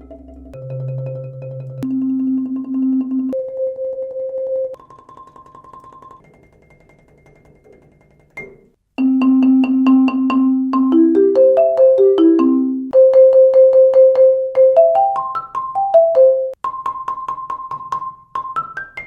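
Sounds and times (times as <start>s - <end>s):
marimba played with yarn mallets: 0.0s - 6.9s, 8.4s - 19.0s.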